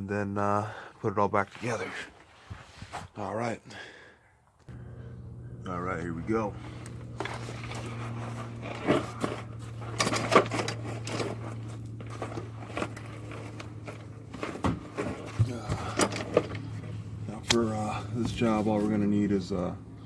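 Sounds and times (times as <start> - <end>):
steady low hum: 4.0 - 20.0.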